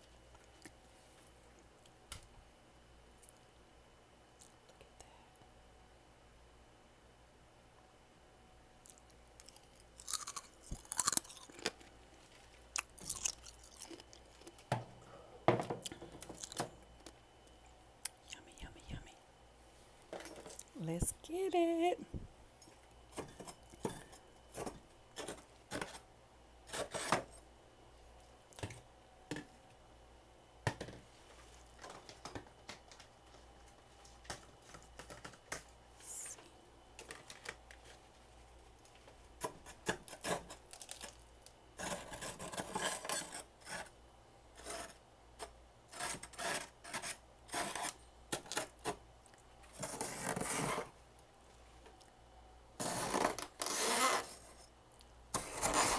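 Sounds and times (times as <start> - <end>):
crunching frost being eaten: 8.8 - 12.0, 12.7 - 14.6.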